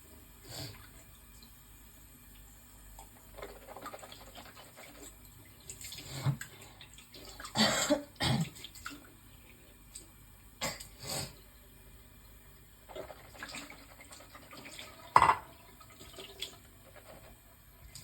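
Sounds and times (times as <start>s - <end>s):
woman coughing and gagging: 7.5s - 8.4s.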